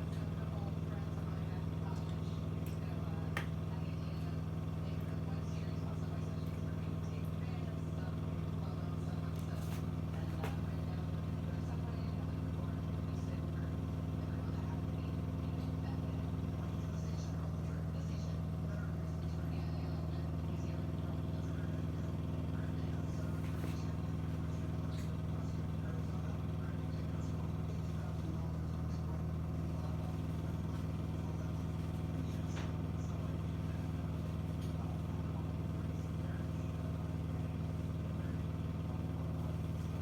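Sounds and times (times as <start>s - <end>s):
dishwasher humming: 0.0s - 40.0s.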